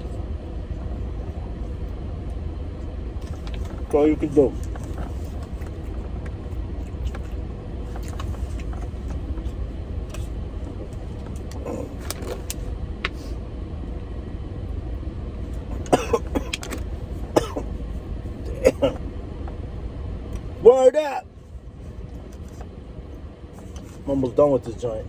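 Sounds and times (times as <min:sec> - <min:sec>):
low rumble: 0:00.0 - 0:25.0.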